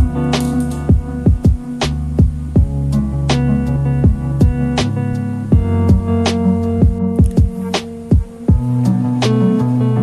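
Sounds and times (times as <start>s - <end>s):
deep electronic kick drums: 0.9s - 2.9s, 4.0s - 4.8s, 5.5s - 8.9s
sustained synth chords: 2.3s - 10.0s.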